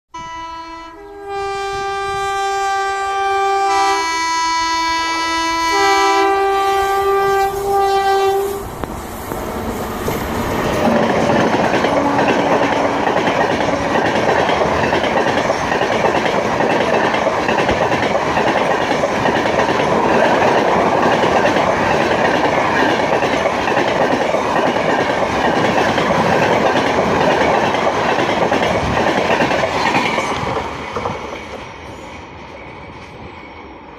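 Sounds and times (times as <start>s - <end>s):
two-note train horn: 0.1s - 8.7s
train rushing past: 3.4s - 33.9s
wheels clacking over rail joints: 8.7s - 33.3s.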